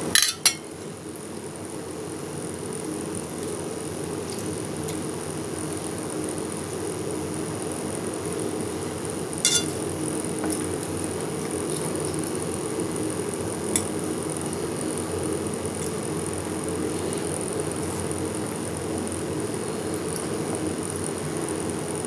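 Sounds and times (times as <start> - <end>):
steady low hum: 0.0 - 22.0
cutlery clicks and clinks: 0.2 - 0.6, 9.5 - 9.8.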